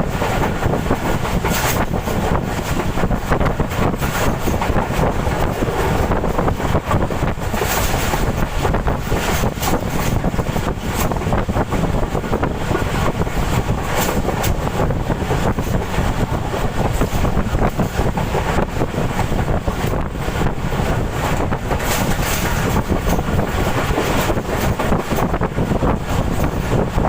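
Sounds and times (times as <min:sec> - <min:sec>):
train rumbling past: 0:00.0 - 0:27.0
train wheels clicking: 0:00.0 - 0:27.0
wind buffeting microphone: 0:00.0 - 0:27.0.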